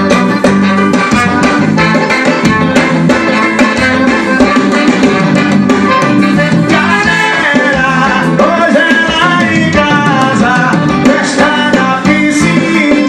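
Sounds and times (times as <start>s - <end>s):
latin dance music: 0.0s - 13.0s
percussion: 0.0s - 13.0s
person singing: 6.3s - 13.0s.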